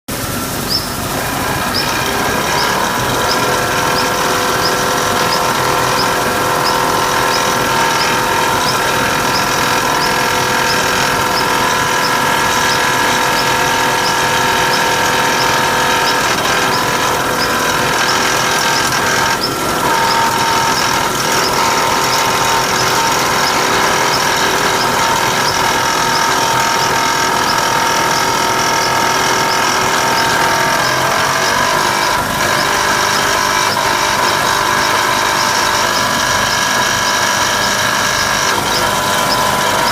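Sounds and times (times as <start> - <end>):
machine whining and squealing: 0.1 - 39.9.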